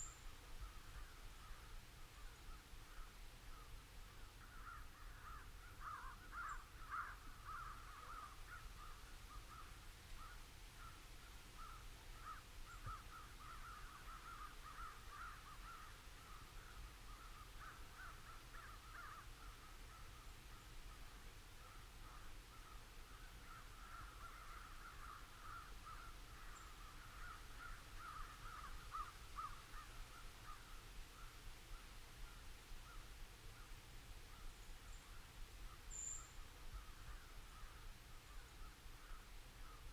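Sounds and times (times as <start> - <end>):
crows cawing: 4.5 - 10.4, 11.6 - 16.0, 17.3 - 19.3, 23.4 - 30.7.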